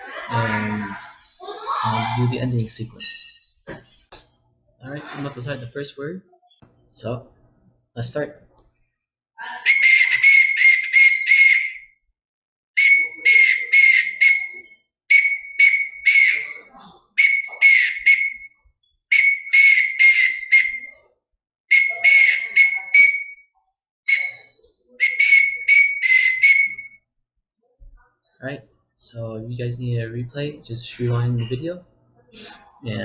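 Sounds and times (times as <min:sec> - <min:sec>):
whistle blowing morse code: 0:09.7 - 0:12.0, 0:12.8 - 0:21.0, 0:21.7 - 0:23.5, 0:24.1 - 0:27.0.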